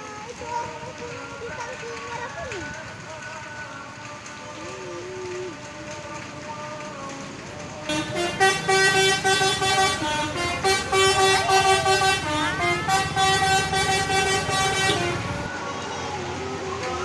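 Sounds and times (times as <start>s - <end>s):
bus engine running: 0.0s - 17.0s
multi-tone air horn tune: 7.9s - 15.5s.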